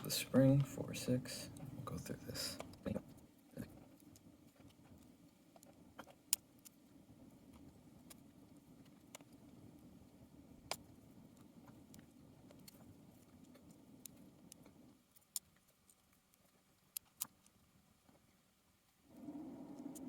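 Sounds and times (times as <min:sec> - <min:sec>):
faint low hum: 0:00.0 - 0:20.0.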